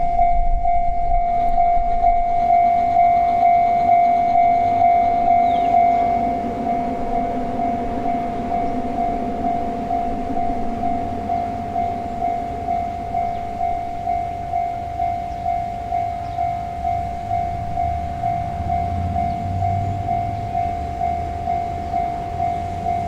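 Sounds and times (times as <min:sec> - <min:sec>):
low rumble: 0:00.0 - 0:14.1
level crossing bell ringing: 0:00.0 - 0:23.0.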